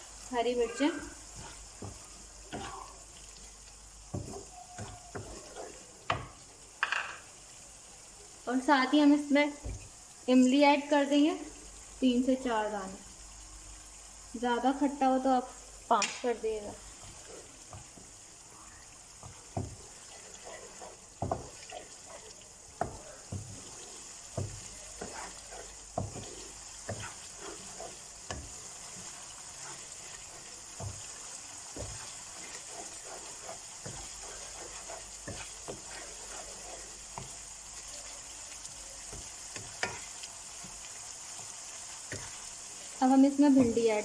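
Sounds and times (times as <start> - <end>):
food sizzling in a pan: 0.0 - 44.0
spoon knocking and scraping pan: 0.4 - 3.0, 4.0 - 7.3, 15.9 - 37.9, 38.6 - 40.8, 41.4 - 42.5, 43.3 - 44.0.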